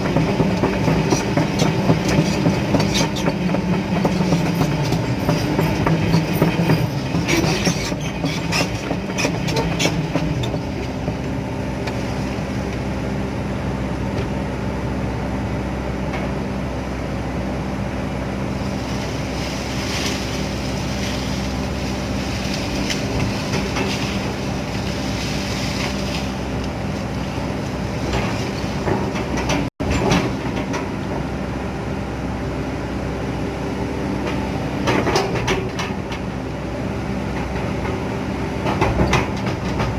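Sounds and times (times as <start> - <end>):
metallic clattering and squeaking: 0.0 - 11.4, 18.8 - 30.4
excavator diesel engine running: 0.0 - 39.9.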